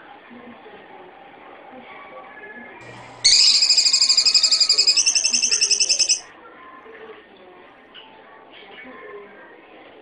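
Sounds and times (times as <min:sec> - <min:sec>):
shrew high-pitched trill: 0:03.2 - 0:06.2.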